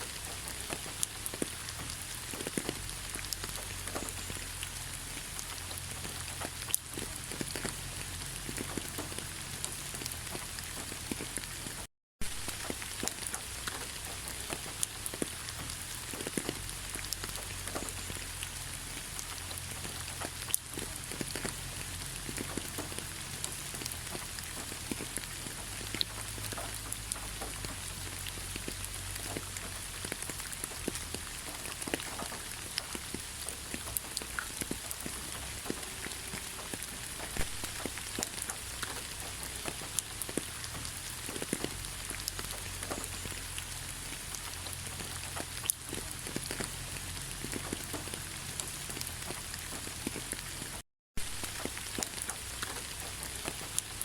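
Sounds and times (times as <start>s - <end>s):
rain hissing: 0.0s - 54.0s
raindrops ticking: 0.0s - 54.0s.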